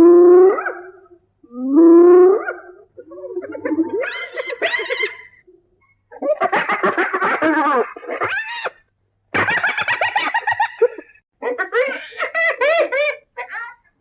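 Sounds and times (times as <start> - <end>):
hyena giggling calls: 2.4 - 6.4.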